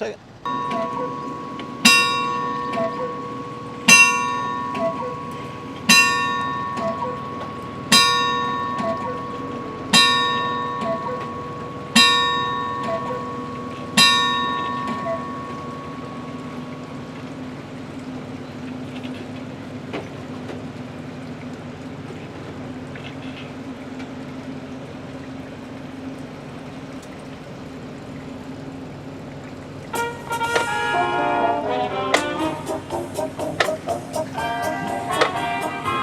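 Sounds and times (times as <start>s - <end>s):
steady low hum: 0.0s - 36.0s
clock bell striking: 0.5s - 17.3s, 32.4s - 36.0s.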